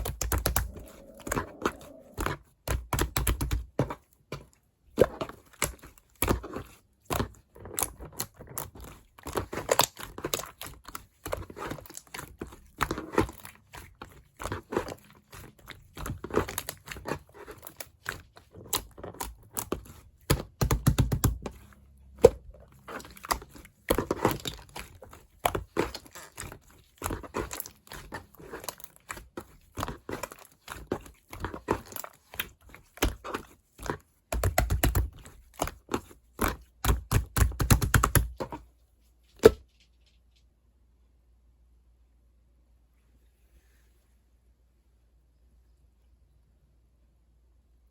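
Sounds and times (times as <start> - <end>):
slime squished by hand: 0.0 - 4.0.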